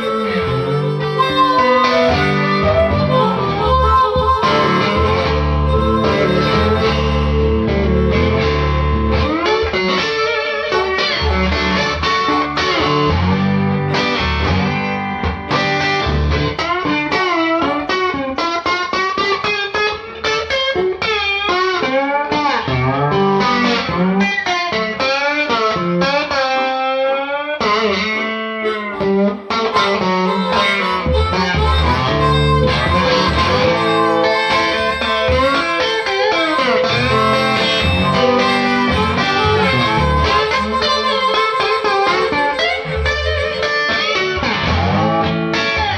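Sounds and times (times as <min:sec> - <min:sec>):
blues guitar solo: 0:00.0 - 0:45.9
low bass line: 0:00.4 - 0:09.3, 0:30.4 - 0:35.6, 0:36.9 - 0:40.9.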